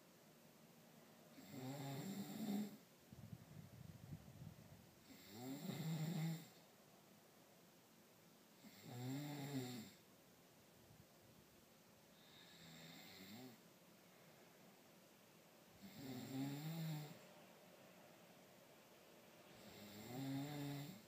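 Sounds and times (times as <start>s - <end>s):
man snoring: 1.3s - 2.8s, 5.0s - 6.6s, 8.6s - 10.0s, 12.2s - 13.6s, 15.8s - 17.2s, 19.6s - 21.0s.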